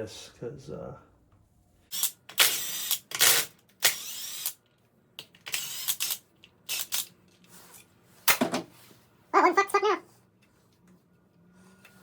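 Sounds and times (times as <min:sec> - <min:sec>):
ratchet wrench clicking: 0:01.9 - 0:04.6.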